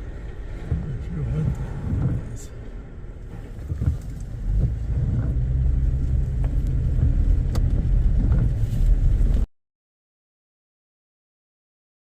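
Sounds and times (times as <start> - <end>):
car driving low rumble: 0.0 - 9.5.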